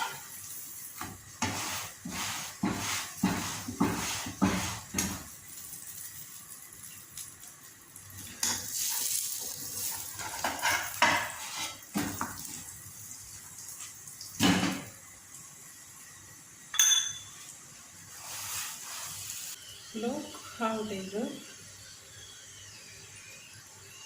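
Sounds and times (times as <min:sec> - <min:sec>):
pans and utensils clattering: 0:00.0 - 0:00.4, 0:08.3 - 0:12.4, 0:14.4 - 0:14.9, 0:16.8 - 0:17.4
metallic clink with ring: 0:16.7 - 0:17.4.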